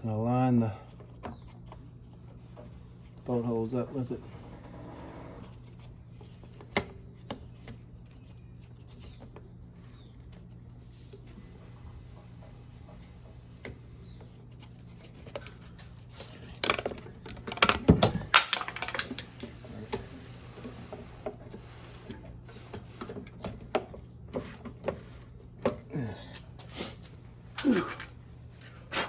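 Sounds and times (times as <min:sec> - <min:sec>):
steady low hum: 0:00.0 - 0:29.0
plastic parts clicking and knocking: 0:14.5 - 0:25.9.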